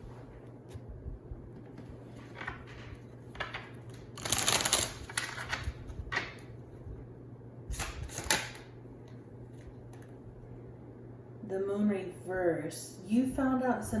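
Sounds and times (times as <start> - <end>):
cards rustling and flicking: 1.7 - 6.5, 7.7 - 8.7.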